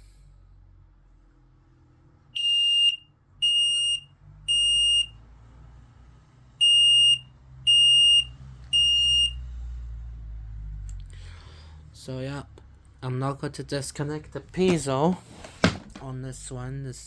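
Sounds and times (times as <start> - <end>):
smoke alarm beeping: 2.4 - 5.1, 6.6 - 9.4.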